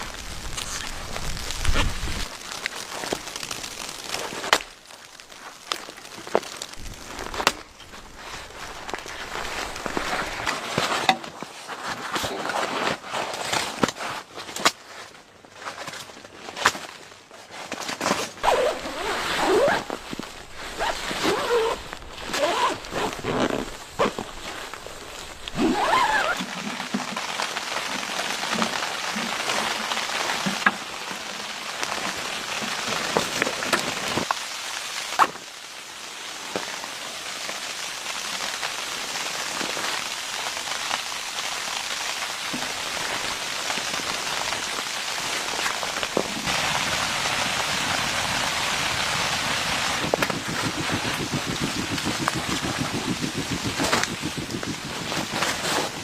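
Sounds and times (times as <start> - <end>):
pattering hiss: 42.6 - 56.0.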